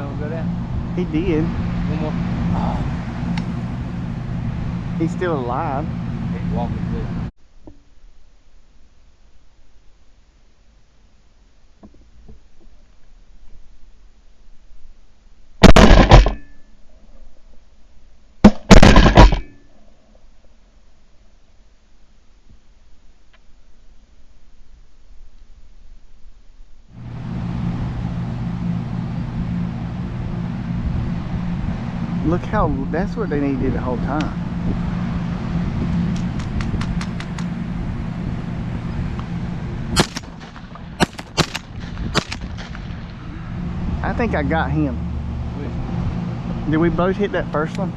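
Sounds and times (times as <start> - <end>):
steady low rumble: 0.0 - 7.3, 26.4 - 47.9
shotgun blasts: 15.6 - 16.6, 18.4 - 19.6, 40.0 - 43.1.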